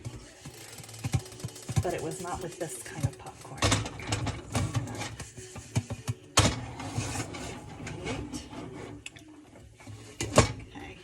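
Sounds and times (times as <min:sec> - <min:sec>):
knocks and clicks around pan: 0:00.0 - 0:08.2.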